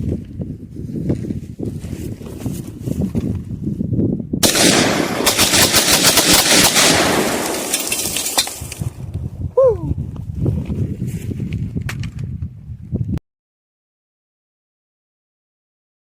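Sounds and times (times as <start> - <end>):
rapid gunfire: 4.4 - 8.5.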